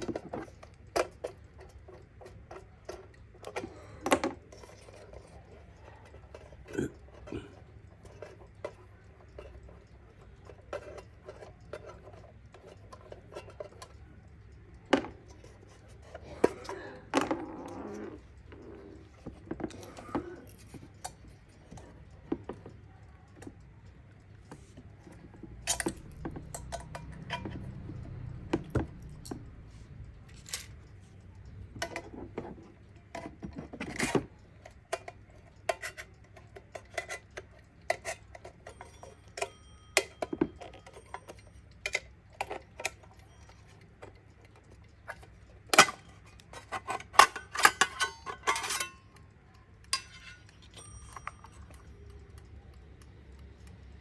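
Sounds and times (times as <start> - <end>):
alarm clock bell ringing: 38.5 - 41.7, 50.6 - 52.0.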